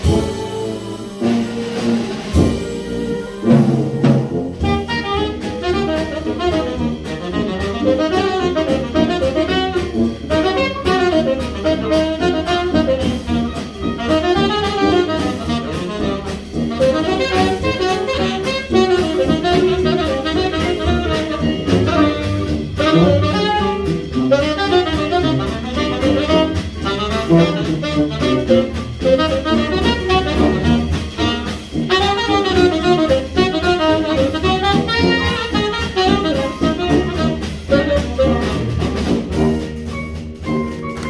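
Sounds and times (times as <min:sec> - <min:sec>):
jazz band playing: 0:00.0 - 0:41.0.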